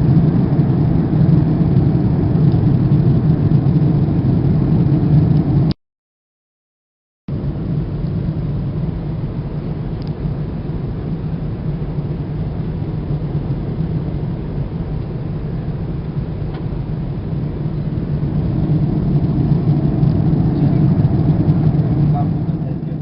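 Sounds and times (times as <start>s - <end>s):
distant traffic rumble: 7.3s - 23.0s.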